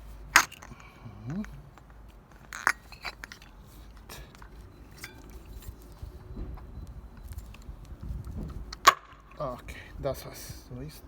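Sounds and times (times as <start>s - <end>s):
light metallic clicks and clinks: 0.4s - 6.0s.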